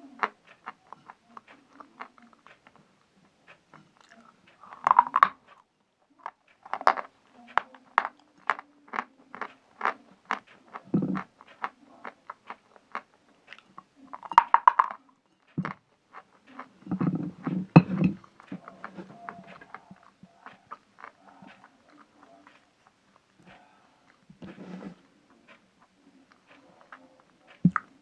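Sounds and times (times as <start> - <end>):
person chewing crunchily: 15.6 - 25.1.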